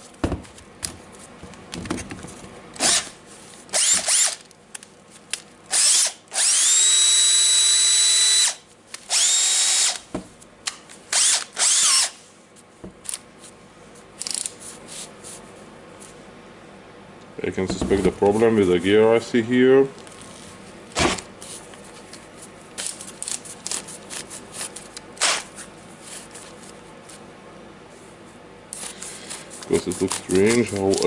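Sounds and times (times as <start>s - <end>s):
cordless drill motor whining: 3.8s - 4.4s, 5.7s - 10.0s, 11.2s - 12.2s.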